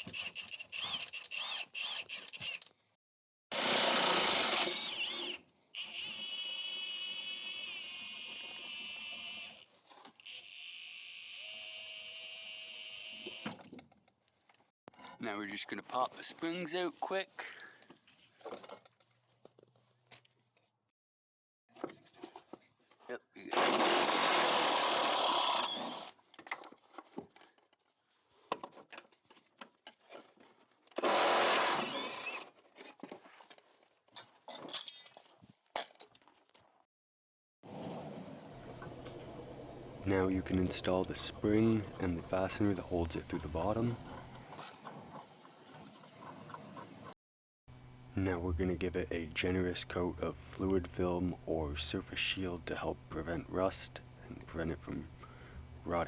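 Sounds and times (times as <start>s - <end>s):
handheld power tool running: 3.5s - 9.6s, 10.2s - 13.5s, 31.0s - 32.5s
cordless power tool whining: 10.2s - 13.6s, 31.0s - 32.5s.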